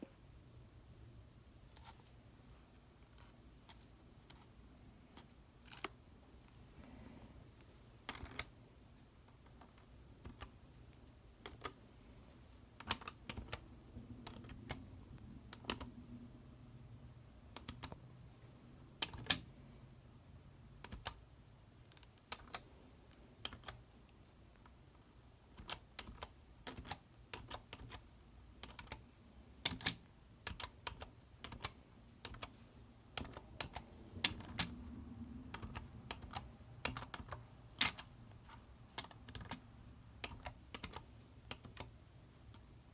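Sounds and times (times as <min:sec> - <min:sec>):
keyboard keys clicking: 0:12.8 - 0:16.0, 0:17.5 - 0:18.0, 0:20.8 - 0:21.2, 0:23.4 - 0:23.8, 0:25.5 - 0:29.0, 0:29.6 - 0:42.7.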